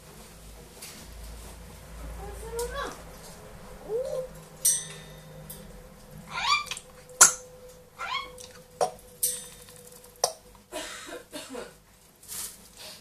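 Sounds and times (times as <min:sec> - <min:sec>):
parrot short rising calls: 0:06.3 - 0:08.9.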